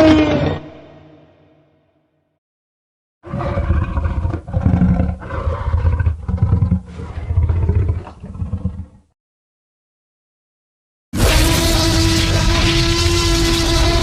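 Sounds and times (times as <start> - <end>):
growling monster roar: 3.2 - 8.8, 11.2 - 14.0.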